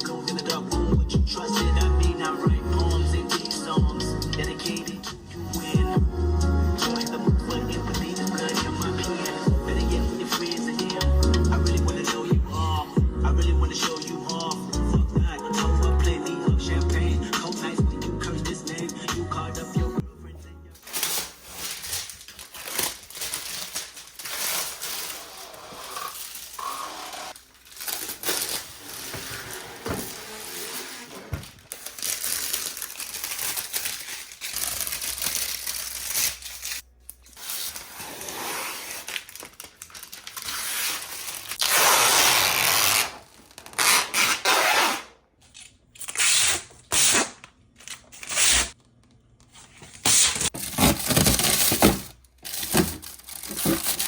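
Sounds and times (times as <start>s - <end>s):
tape and plastic peeling off: 20.8s - 49.0s, 49.8s - 54.0s.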